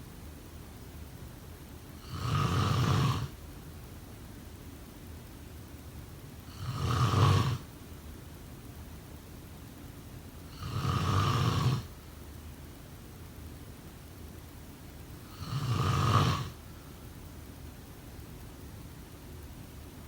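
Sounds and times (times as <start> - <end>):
person snoring: 2.0 - 3.3, 6.5 - 7.6, 10.5 - 11.9, 15.3 - 16.6.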